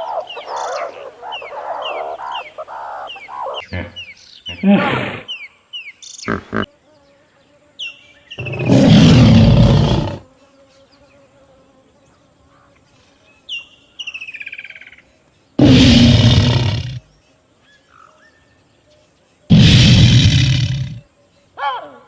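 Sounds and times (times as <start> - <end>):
brief animal calls: 3.6 - 5.4
big cat roaring: 3.7 - 5.3, 8.4 - 10.2, 15.6 - 17.0, 19.5 - 21.0
falling bird chirps: 7.9 - 10.2, 15.6 - 17.1, 19.5 - 21.0.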